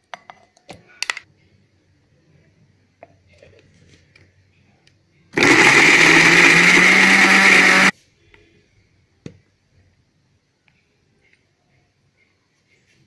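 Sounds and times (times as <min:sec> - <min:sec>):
mixer grinder motor: 0:05.4 - 0:07.9.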